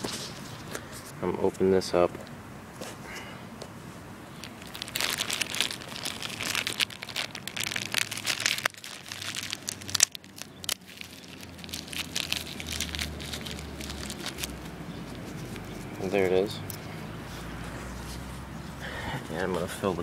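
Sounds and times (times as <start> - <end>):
packaging crinkling and tearing: 4.3 - 15.8.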